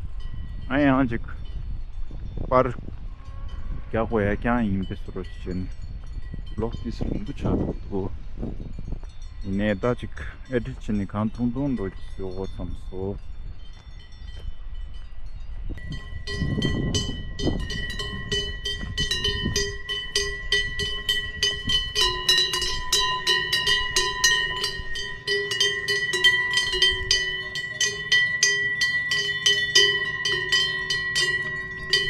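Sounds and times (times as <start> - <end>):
metallic bell ringing: 8.8 - 32.0.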